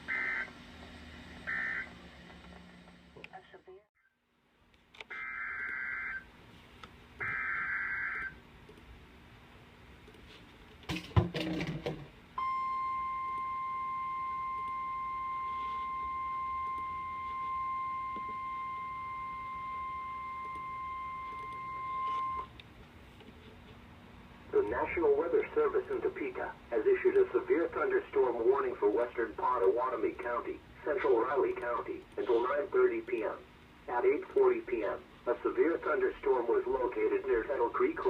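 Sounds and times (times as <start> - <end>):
steady warning alert tone: 12.4 - 22.5
static crackle: 24.5 - 38.0.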